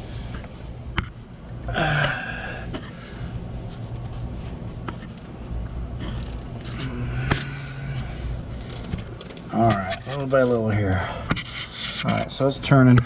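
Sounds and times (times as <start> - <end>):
steady low hum: 0.0 - 13.0
grunt-like breath: 1.7 - 3.0, 6.6 - 8.5.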